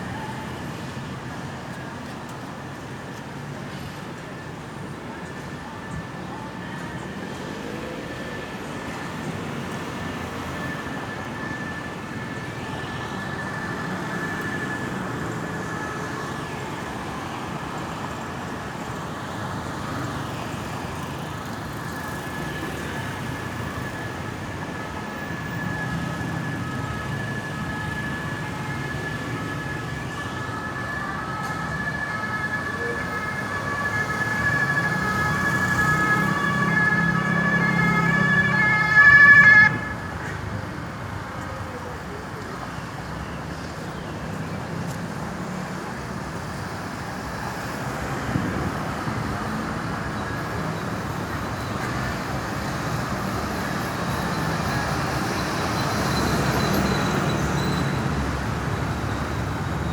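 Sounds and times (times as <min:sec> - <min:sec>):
ambulance siren: 0:00.0 - 0:59.9
traffic rumble: 0:07.0 - 0:59.9
rapid pulsing siren tone: 0:21.5 - 0:40.8.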